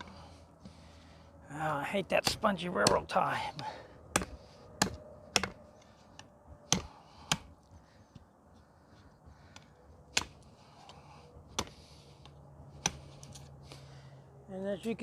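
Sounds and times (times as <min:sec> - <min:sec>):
knife chopping into wood: 0:02.2 - 0:03.1, 0:04.1 - 0:05.6, 0:06.2 - 0:07.5, 0:10.1 - 0:10.5, 0:11.5 - 0:11.8, 0:12.8 - 0:13.4.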